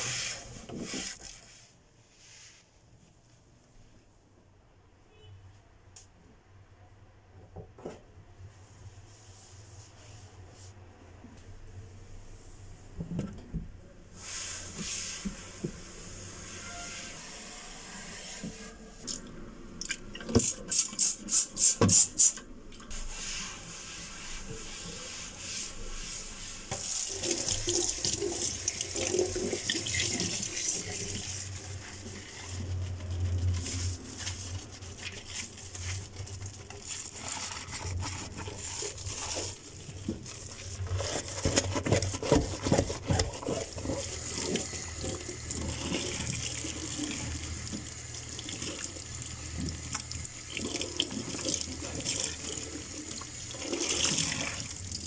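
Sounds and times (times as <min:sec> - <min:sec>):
water running: 0:22.9 - 0:55.0.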